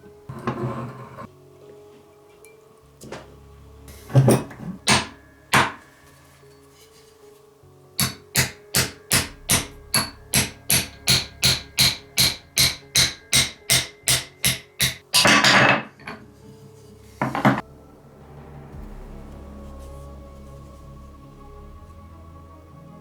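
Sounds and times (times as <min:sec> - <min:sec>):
background music: 0:00.0 - 0:23.0
hand hammering blows: 0:04.0 - 0:05.9, 0:08.0 - 0:15.9.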